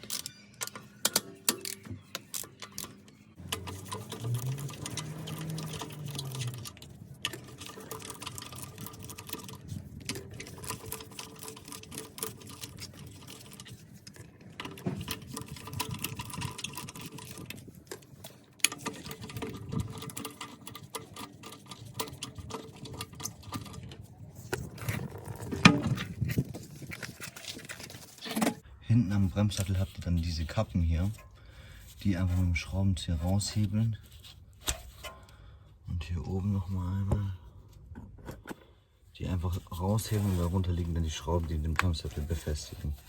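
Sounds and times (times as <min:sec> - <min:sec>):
ratchet clicking: 0:00.0 - 0:09.6.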